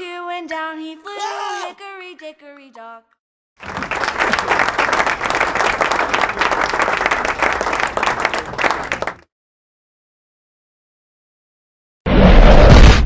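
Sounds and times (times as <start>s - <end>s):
audience applauding: 3.6s - 9.3s.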